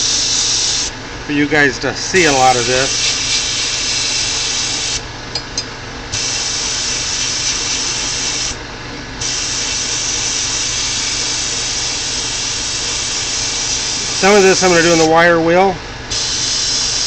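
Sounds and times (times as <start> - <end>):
sandblasting gun hissing: 0.0 - 0.9, 2.3 - 5.0, 6.1 - 8.6, 9.2 - 15.1, 16.1 - 17.0.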